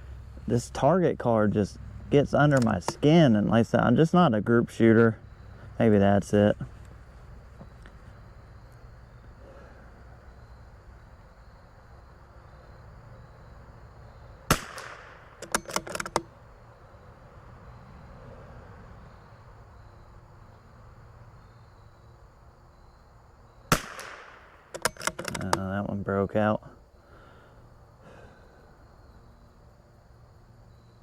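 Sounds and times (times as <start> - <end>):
rifle bolt metallic clicks: 2.5 - 3.1, 14.5 - 16.3, 23.7 - 25.7
rifle shots: 14.5 - 16.0, 23.7 - 25.1.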